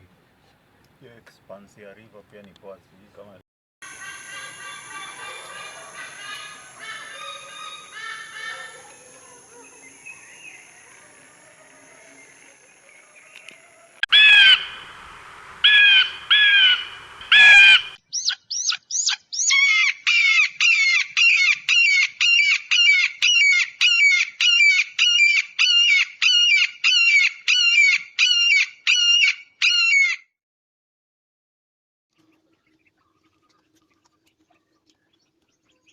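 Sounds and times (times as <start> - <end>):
bird calling harshly: 3.8 - 10.4, 14.1 - 14.9, 15.6 - 30.2.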